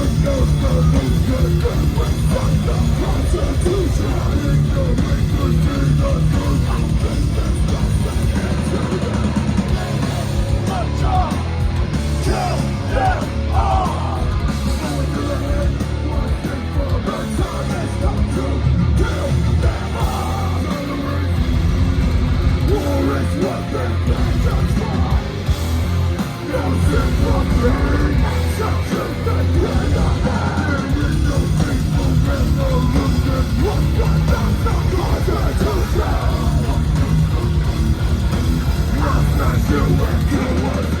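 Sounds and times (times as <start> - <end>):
heavy band playing distorted guitars: 0.0 - 41.0
vocalist yelling: 10.5 - 11.6, 12.2 - 15.6.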